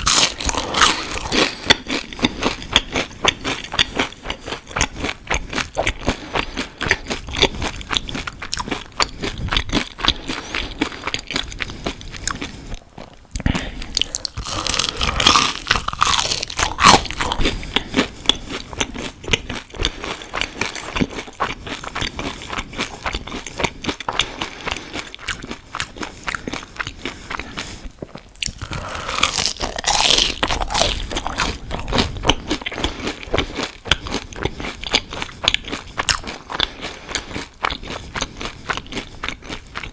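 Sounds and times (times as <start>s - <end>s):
crunchy chewing: 0.0s - 39.9s.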